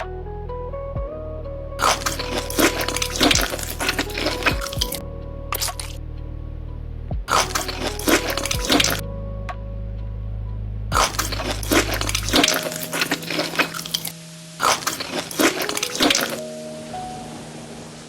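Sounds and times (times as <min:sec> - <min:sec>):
low background music: 0:00.0 - 0:18.0
crunchy food being chewed: 0:01.8 - 0:05.0, 0:05.6 - 0:06.0, 0:07.3 - 0:09.0, 0:10.9 - 0:16.4.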